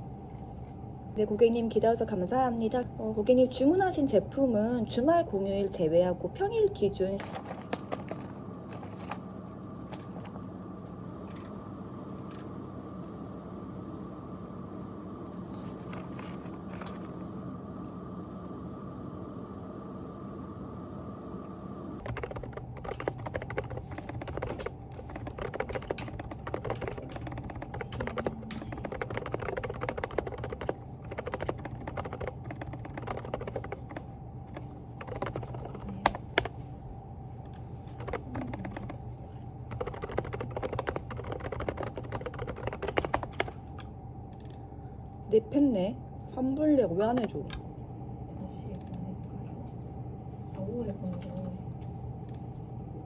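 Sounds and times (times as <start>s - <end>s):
steady hum: 0.0s - 53.0s
mechanical keyboard typing: 22.0s - 36.6s, 37.5s - 39.0s, 39.7s - 43.8s.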